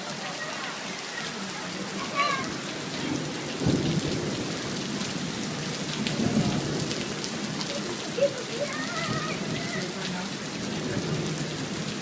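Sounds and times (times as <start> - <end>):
heavy rain pouring: 0.0 - 12.0
thunder rumbling: 2.4 - 12.0.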